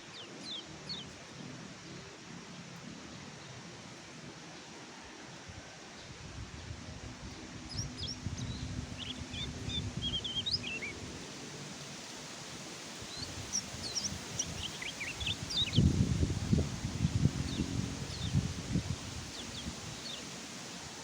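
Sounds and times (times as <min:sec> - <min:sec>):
bird twittering chirps: 0:07.7 - 0:11.0, 0:13.2 - 0:15.9.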